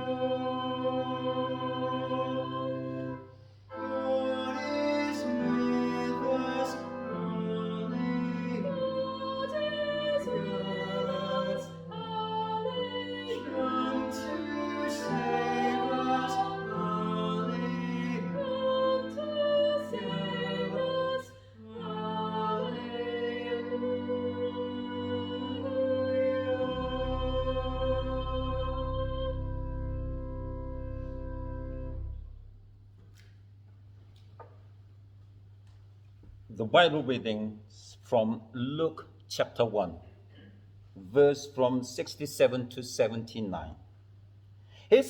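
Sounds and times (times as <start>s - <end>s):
hymn singing: 0.0s - 32.3s
instrumental accompaniment: 21.9s - 32.8s.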